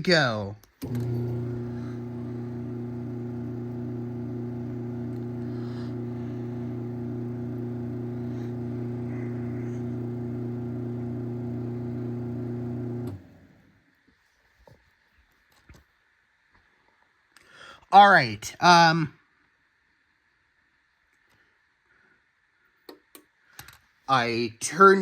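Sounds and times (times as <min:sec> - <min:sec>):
garage door opener motor humming: 0:00.8 - 0:13.7.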